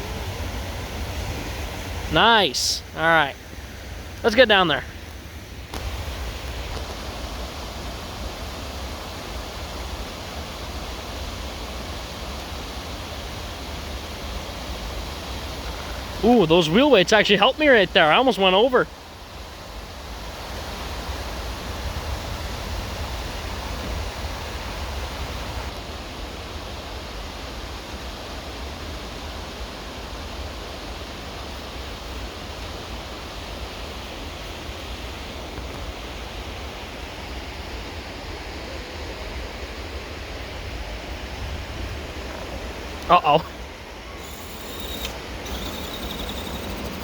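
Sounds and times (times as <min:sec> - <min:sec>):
large waterfall rushing: 0:00.0 - 0:03.5.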